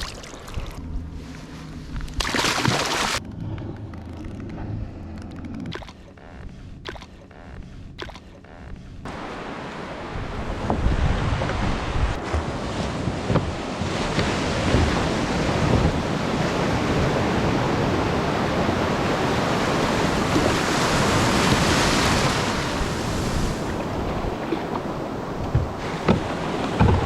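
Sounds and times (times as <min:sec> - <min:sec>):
ocean surf breaking: 0:09.1 - 0:27.0
wind buffeting microphone: 0:10.0 - 0:27.0.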